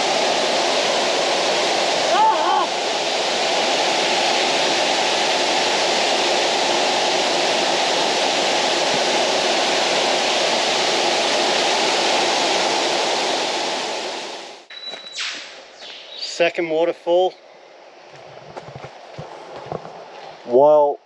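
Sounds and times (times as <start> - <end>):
waterfall rushing: 0.0 - 14.7.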